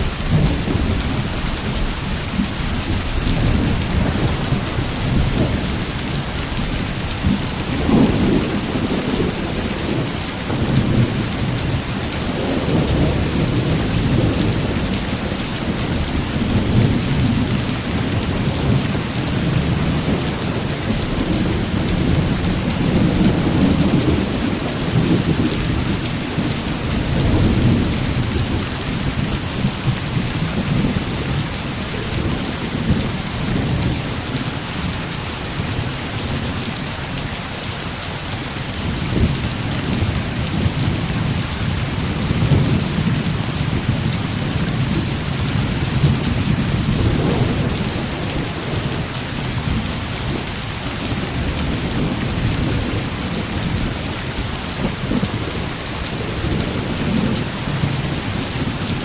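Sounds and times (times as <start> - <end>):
rolling thunder: 0.0 - 35.0, 38.8 - 50.5
heavy rain falling: 0.0 - 59.0.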